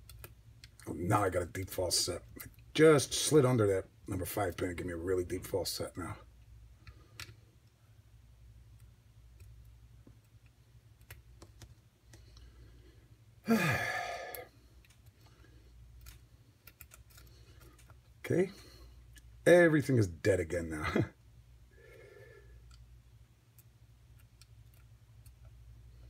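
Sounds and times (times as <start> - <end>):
person sighing: 13.4 - 14.5.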